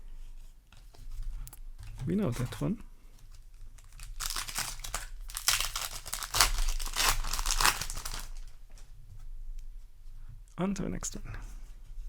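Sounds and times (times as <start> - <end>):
wrappers crinkling and rustling: 0.9 - 8.9.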